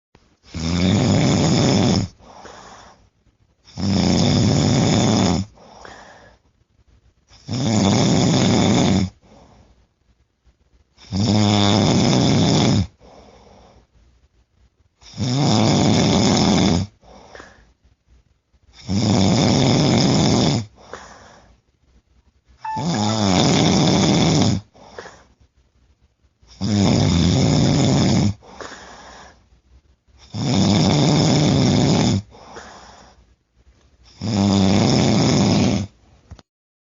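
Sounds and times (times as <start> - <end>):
person snoring loudly: 0.5 - 2.1, 3.7 - 5.5
soft breath out: 5.6 - 6.5, 28.5 - 29.4.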